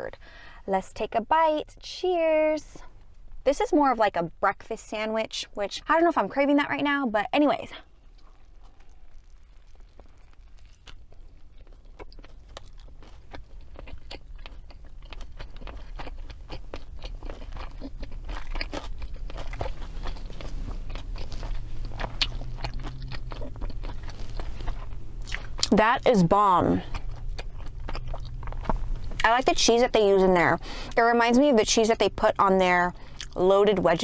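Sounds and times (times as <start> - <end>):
crunching and chewing food: 7.7 - 34.0.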